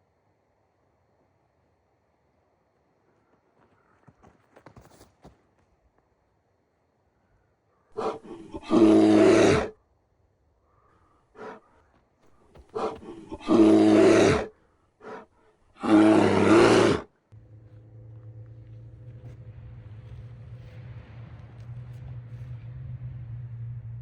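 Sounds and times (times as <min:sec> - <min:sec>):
steady low hum: 0:17.2 - 0:24.0.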